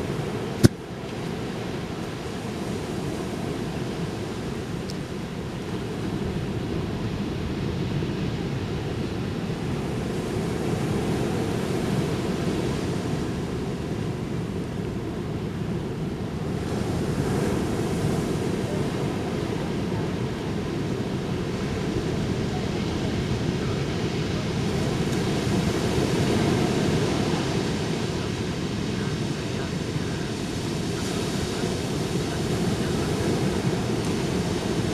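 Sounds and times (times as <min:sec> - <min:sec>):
ocean surf washing onto beach: 0:00.0 - 0:34.9.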